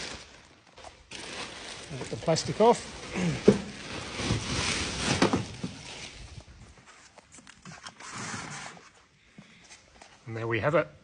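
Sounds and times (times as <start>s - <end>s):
plastic wrapping crinkling: 0.0s - 7.7s.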